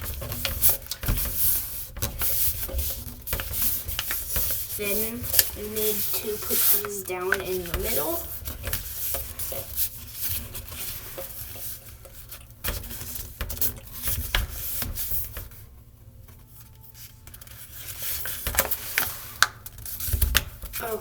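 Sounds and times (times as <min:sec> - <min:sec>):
paper being folded and creased: 0:00.0 - 0:15.6, 0:16.6 - 0:21.0.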